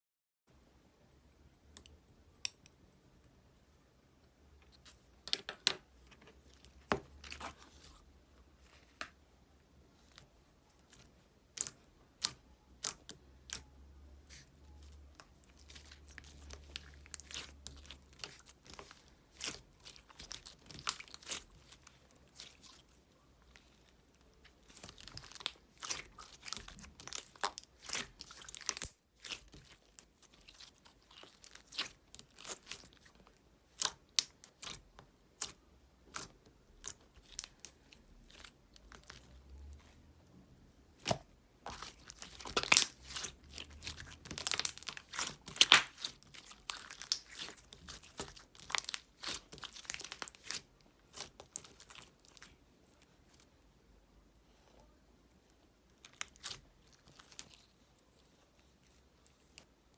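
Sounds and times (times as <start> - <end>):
crunching sticky material: 10.0 - 40.0, 41.0 - 53.5, 55.9 - 59.9.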